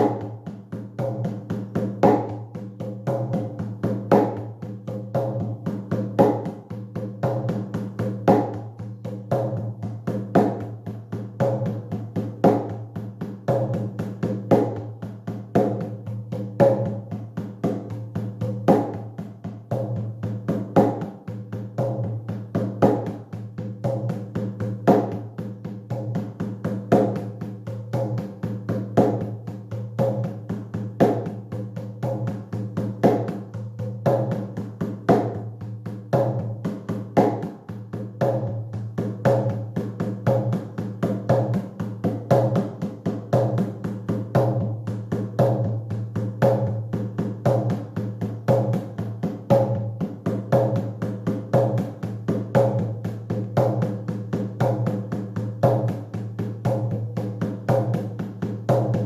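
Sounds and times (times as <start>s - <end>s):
hand drum beating fast rhythm: 0.0s - 59.0s.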